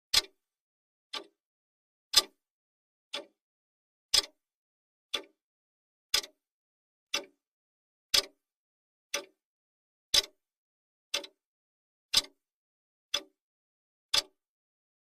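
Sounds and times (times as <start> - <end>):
clock ticking: 0.1 - 0.4, 1.1 - 1.4, 2.1 - 2.4, 3.1 - 3.4, 4.1 - 4.4, 5.1 - 5.4, 6.1 - 6.4, 7.1 - 7.4, 8.1 - 8.4, 9.1 - 9.4, 10.1 - 10.4, 11.1 - 11.4, 12.1 - 12.4, 13.1 - 13.4, 14.1 - 14.4.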